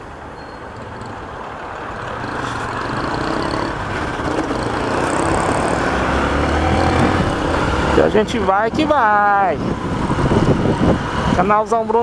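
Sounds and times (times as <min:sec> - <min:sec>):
road and wind noise: 0:00.0 - 0:12.0
motorcycle engine running: 0:02.1 - 0:11.4.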